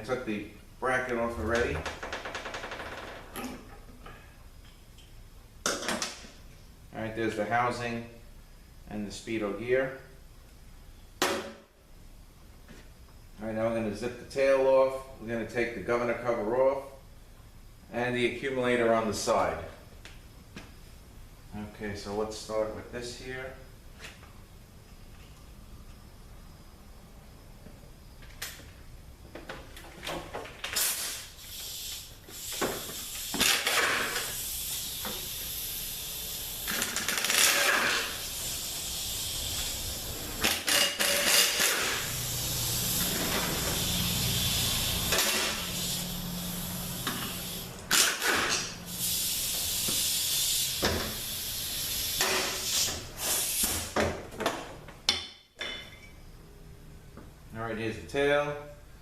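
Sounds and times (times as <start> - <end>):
air tool hissing: 30.7 - 54.0.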